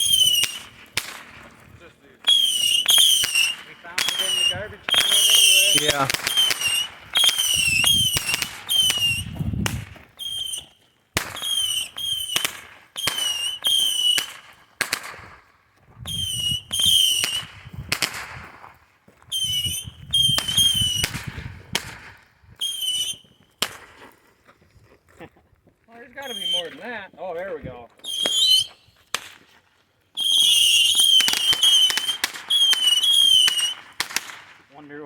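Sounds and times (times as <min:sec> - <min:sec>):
high wavering whistle: 0:00.0 - 0:00.8, 0:02.2 - 0:09.6, 0:10.2 - 0:10.8, 0:11.4 - 0:14.3, 0:16.0 - 0:17.5, 0:19.3 - 0:21.1, 0:22.6 - 0:23.4, 0:26.2 - 0:26.9, 0:28.0 - 0:29.0, 0:30.2 - 0:33.8
whistling fireworks cracking: 0:00.0 - 0:24.2, 0:26.0 - 0:27.3, 0:27.9 - 0:35.0.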